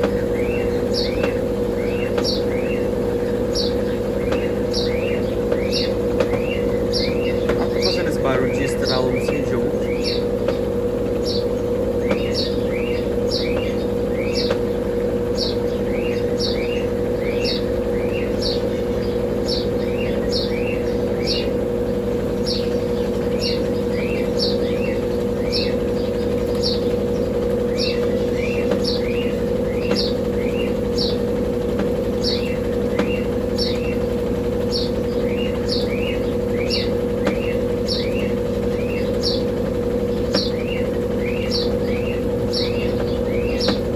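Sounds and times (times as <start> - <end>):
washing machine spinning: 0.0 - 43.9
bird chirping: 0.2 - 10.4, 34.7 - 43.9.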